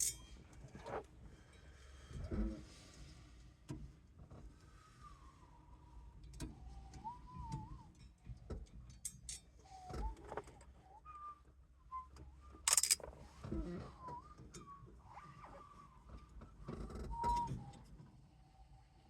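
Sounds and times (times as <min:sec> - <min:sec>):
metallic clicks of parts handled: 0:00.0 - 0:00.2, 0:12.7 - 0:13.0
person whistling softly: 0:04.8 - 0:08.2, 0:09.6 - 0:12.7, 0:13.8 - 0:18.6
short rattle: 0:12.7 - 0:13.1.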